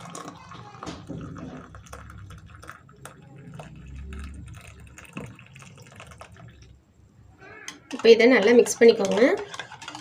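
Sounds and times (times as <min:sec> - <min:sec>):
milk pouring into a cup: 0:00.0 - 0:06.8.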